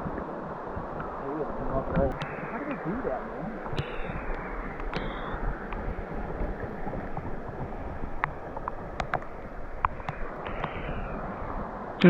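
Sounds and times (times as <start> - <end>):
running water: 0.0 - 12.0
wind: 0.0 - 12.0
light sharp ticks: 8.2 - 10.8.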